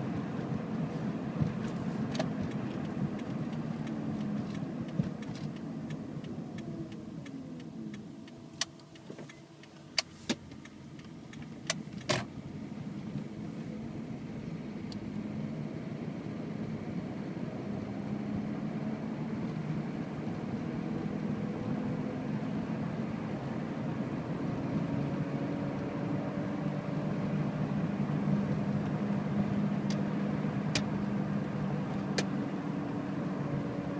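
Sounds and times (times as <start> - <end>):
car engine running rough: 0.0 - 33.9
sharp engine clicks: 2.1 - 12.2.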